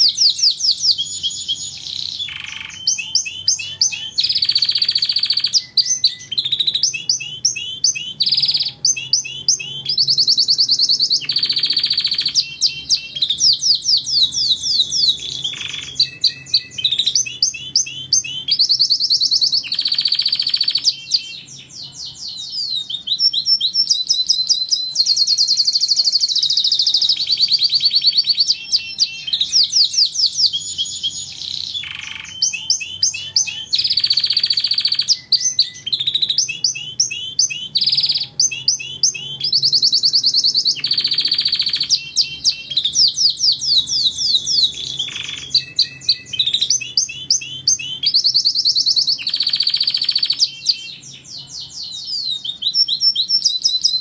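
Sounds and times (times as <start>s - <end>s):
canary singing trills: 0.0s - 54.0s.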